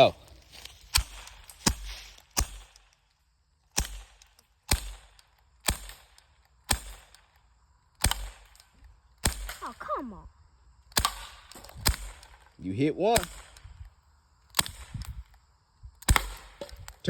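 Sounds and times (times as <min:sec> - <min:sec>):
bb gun shots cracking: 0:03.7 - 0:07.2, 0:08.0 - 0:08.5, 0:10.9 - 0:12.4, 0:13.1 - 0:13.8, 0:14.5 - 0:15.1, 0:16.0 - 0:16.8.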